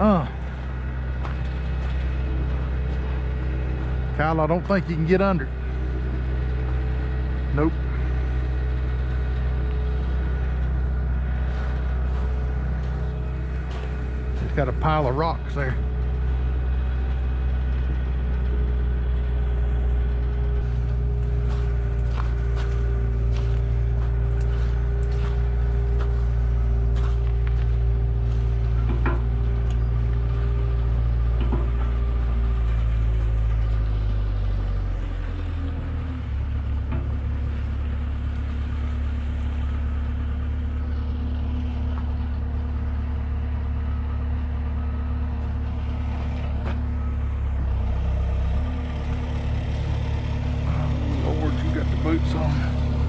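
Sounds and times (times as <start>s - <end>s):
heavy vehicle engine running: 0.0s - 53.0s.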